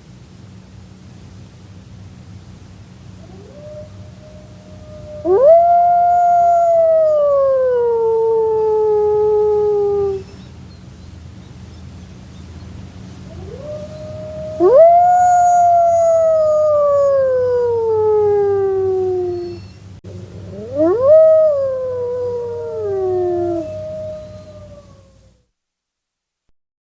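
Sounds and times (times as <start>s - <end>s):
faint low hum: 0.0s - 26.4s
wolves howling: 3.2s - 10.3s, 13.3s - 25.4s.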